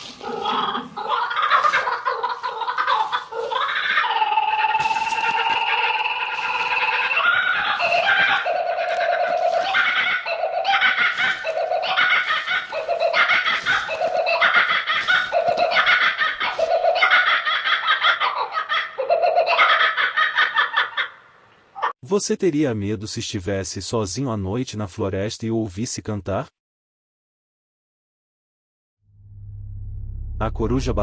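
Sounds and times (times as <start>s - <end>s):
kookaburra cackling call: 0.0s - 21.2s.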